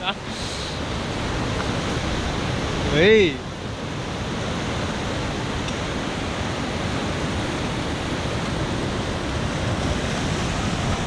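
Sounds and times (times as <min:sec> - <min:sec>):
ocean surf on rocks: 0:00.0 - 0:11.0
wind on microphone: 0:00.0 - 0:11.0.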